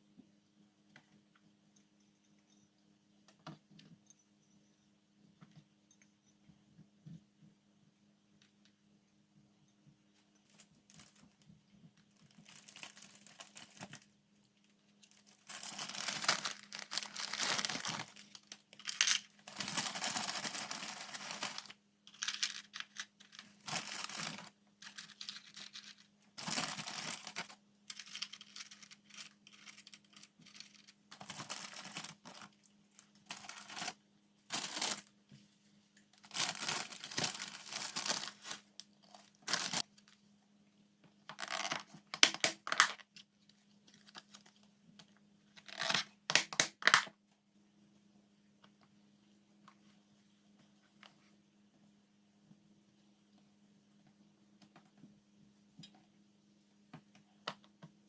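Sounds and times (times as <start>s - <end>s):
faint steady hum: 0.0s - 58.0s
food packaging crinkling: 12.3s - 14.1s, 15.1s - 32.6s, 33.2s - 35.1s, 36.2s - 40.1s.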